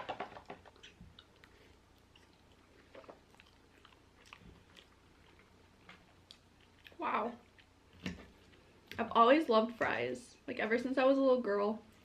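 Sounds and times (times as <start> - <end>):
close-up chewing: 0.6 - 9.0.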